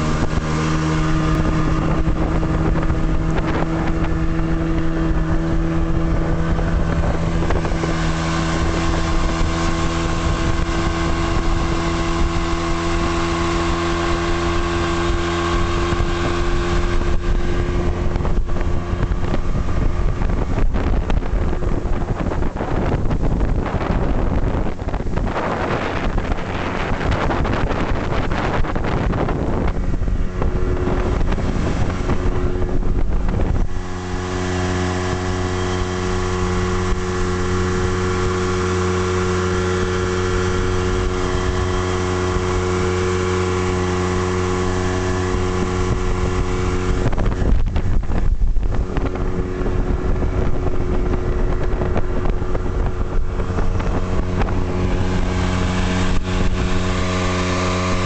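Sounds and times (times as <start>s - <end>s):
outboard motor running: 0.0s - 58.0s
wind buffeting microphone: 0.0s - 58.0s.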